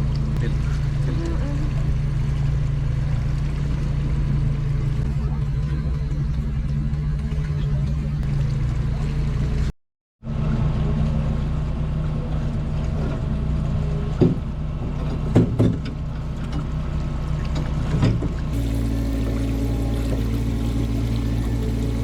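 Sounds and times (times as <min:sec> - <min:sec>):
boat engine humming: 0:00.0 - 0:09.7, 0:18.5 - 0:22.0.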